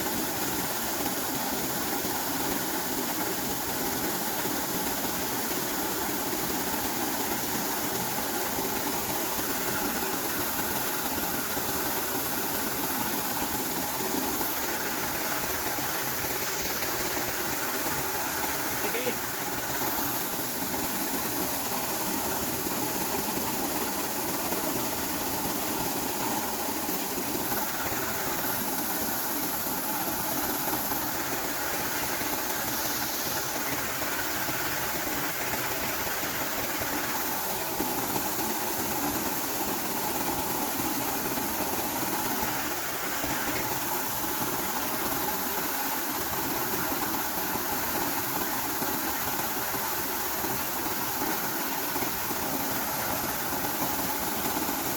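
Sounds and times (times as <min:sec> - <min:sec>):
corn-shelling machine running: 0:08.5 - 0:46.0.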